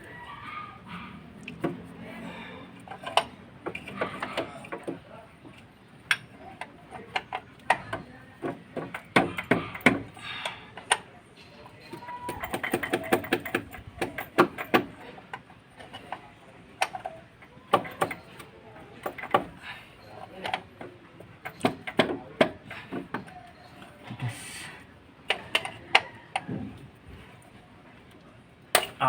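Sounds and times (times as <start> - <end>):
hand tools clinking on metal parts: 6.1 - 16.2.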